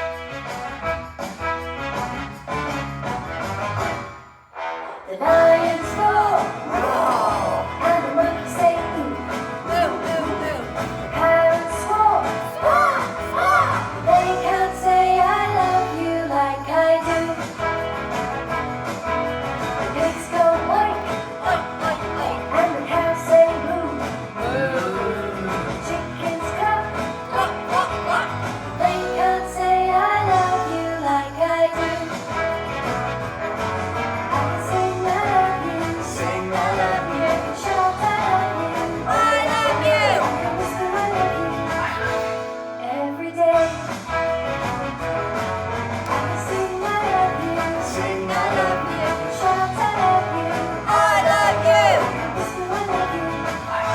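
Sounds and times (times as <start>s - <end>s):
person singing a song: 4.8s - 17.4s, 20.0s - 32.2s, 34.6s - 42.1s, 46.1s - 53.9s.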